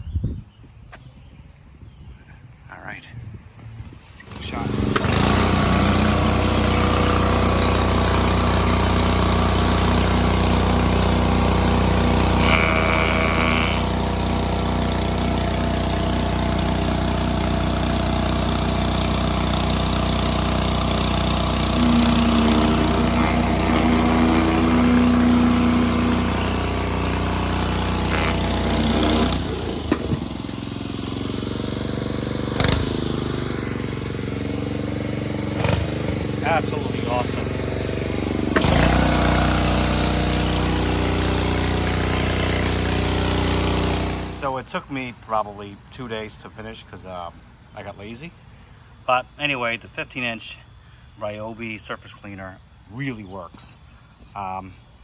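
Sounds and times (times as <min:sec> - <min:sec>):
pressure washer engine running: 0:04.2 - 0:44.6.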